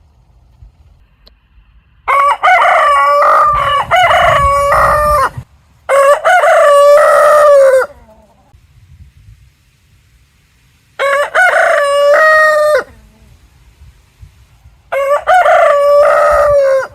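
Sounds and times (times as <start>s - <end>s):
rooster crowing: 2.0s - 8.6s, 11.0s - 13.1s, 14.9s - 16.9s.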